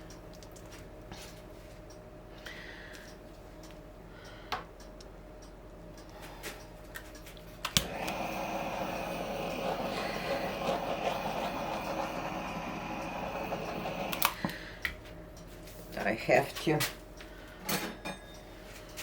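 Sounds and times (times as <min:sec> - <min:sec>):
torch switch click: 0:07.6 - 0:09.7, 0:12.9 - 0:14.4
torch flame hissing: 0:07.8 - 0:14.4.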